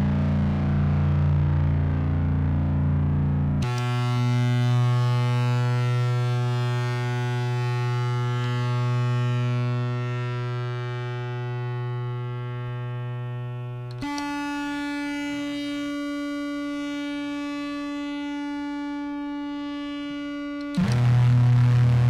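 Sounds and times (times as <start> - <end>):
distorted clarinet drone: 13.9 - 22.0.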